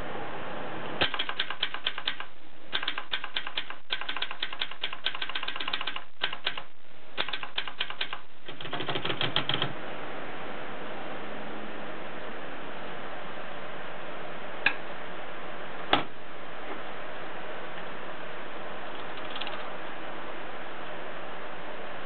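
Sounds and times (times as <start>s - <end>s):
steady background hiss: 0.0s - 22.0s
typewriter keystroke clacks: 1.0s - 9.7s, 19.2s - 19.6s.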